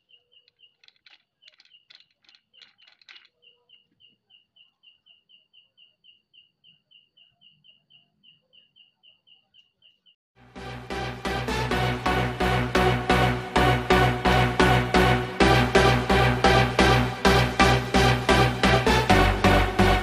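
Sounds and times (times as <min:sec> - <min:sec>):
faint high-pitched chirps: 0:00.0 - 0:10.2.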